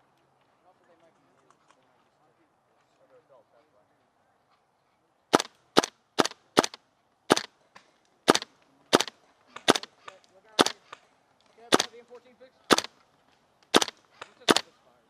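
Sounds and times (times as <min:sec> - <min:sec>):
airsoft gun shots: 0:05.3 - 0:07.5, 0:08.2 - 0:11.0, 0:11.7 - 0:12.0, 0:12.7 - 0:13.0, 0:13.7 - 0:14.7.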